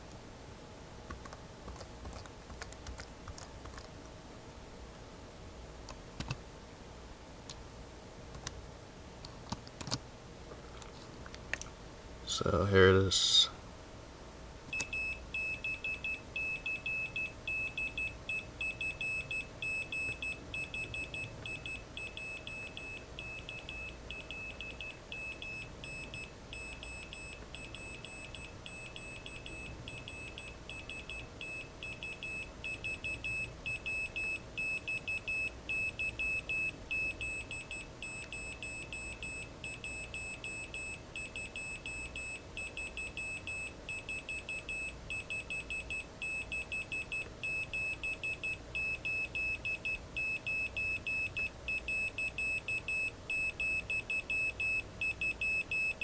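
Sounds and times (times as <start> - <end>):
morse code beeping: 14.8 - 56.0.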